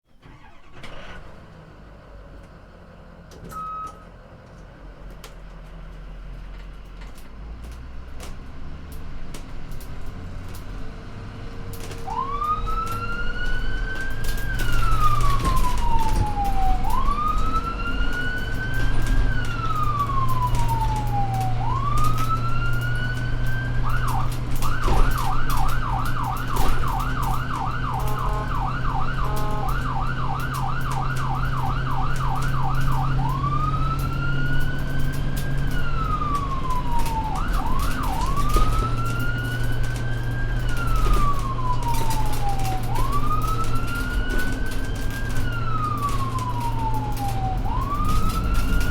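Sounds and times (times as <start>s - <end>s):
ambulance engine running: 0.0s - 48.9s
siren wailing and yelping: 12.1s - 48.9s.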